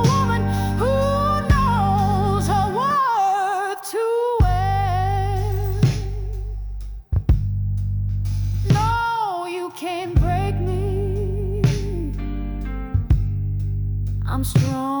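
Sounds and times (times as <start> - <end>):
slow blues ballad music: 0.0 - 3.3, 4.4 - 6.7, 8.3 - 15.0.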